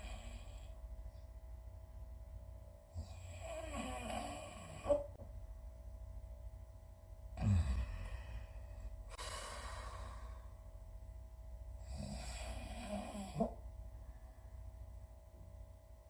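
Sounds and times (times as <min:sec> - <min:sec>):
steady low hum: 0:00.0 - 0:16.0
person snoring: 0:03.0 - 0:05.1, 0:07.4 - 0:08.6, 0:11.8 - 0:13.6
long breathy exhale: 0:07.4 - 0:10.6.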